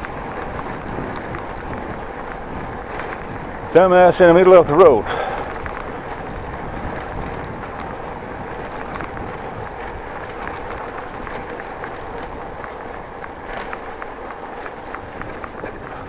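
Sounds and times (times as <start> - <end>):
bicycle road and wind noise: 0.0 - 16.0
small clicks and rattles: 0.0 - 16.0.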